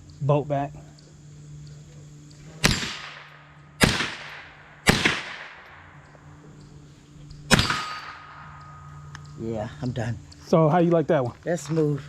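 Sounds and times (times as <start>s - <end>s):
rifle shots echoing: 2.6s - 6.4s, 7.5s - 9.1s.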